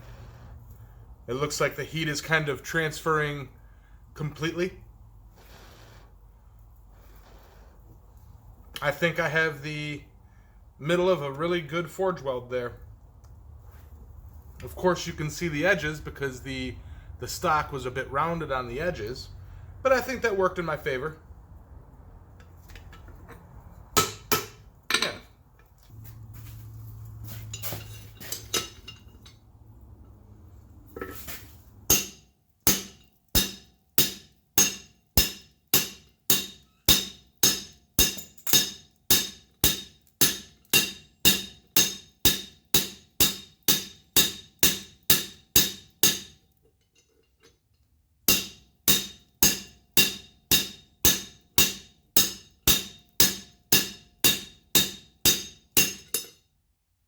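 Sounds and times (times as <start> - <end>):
hammer striking iron on anvil: 24.0 - 25.3, 31.9 - 46.4, 48.3 - 56.4.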